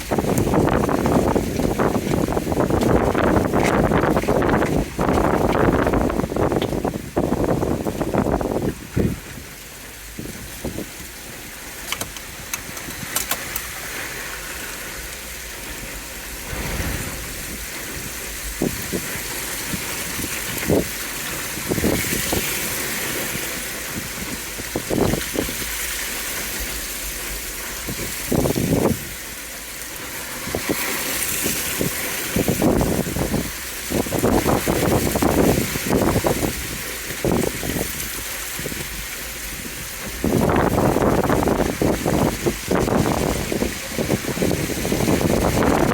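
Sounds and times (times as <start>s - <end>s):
car engine and road rumble: 0.0s - 45.9s
short loud noise bursts: 16.3s - 19.3s.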